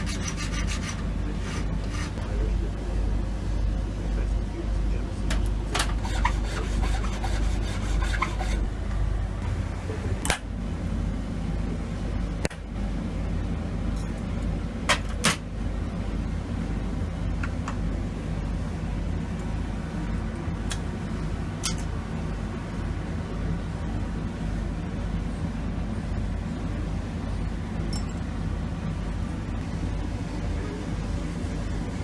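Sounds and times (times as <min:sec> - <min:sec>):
rasping scrape: 0:00.0 - 0:02.2, 0:05.9 - 0:08.7
low machine hum: 0:00.0 - 0:32.0.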